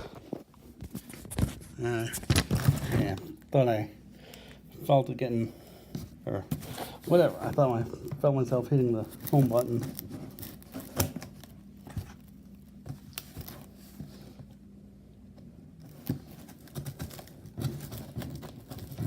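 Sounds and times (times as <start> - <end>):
faint steady hum: 0.0 - 19.0
hands handling cardboard box: 0.2 - 3.2, 15.8 - 19.0.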